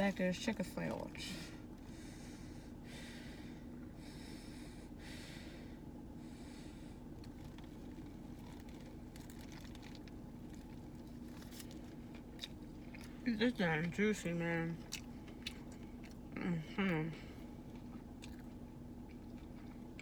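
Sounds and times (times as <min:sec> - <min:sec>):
steady low hum: 0:00.0 - 0:20.0
chewing clicks: 0:17.7 - 0:20.0.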